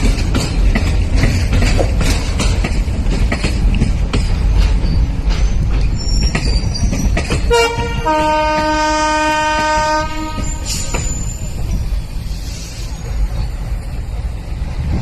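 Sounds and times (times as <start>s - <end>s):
wheels knocking over rail joints: 0.0s - 5.0s
diesel locomotives rumbling: 0.0s - 15.0s
locomotive air horn blasts: 7.5s - 10.8s.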